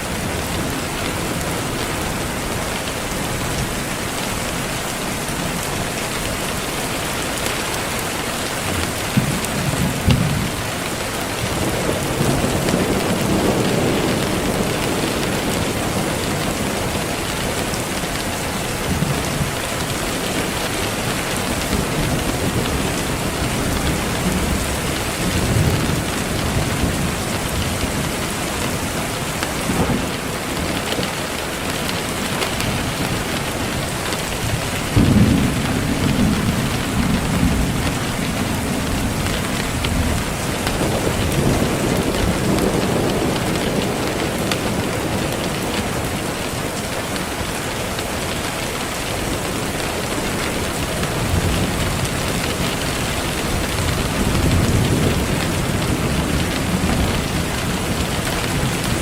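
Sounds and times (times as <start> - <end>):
rain hissing: 0.0 - 59.0
distant thunder rumbling: 5.5 - 46.8, 49.3 - 59.0.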